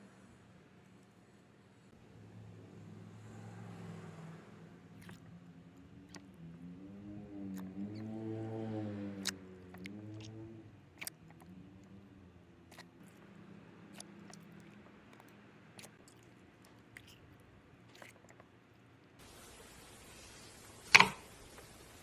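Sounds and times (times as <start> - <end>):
slime squeezed clicking and popping: 11.0 - 11.5.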